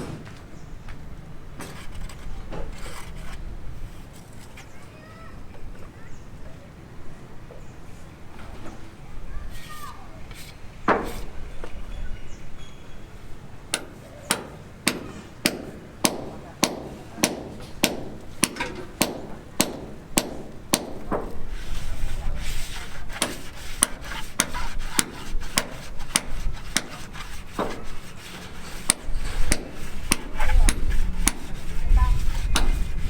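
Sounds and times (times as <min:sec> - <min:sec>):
hammer blows ringing: 0:13.8 - 0:21.3.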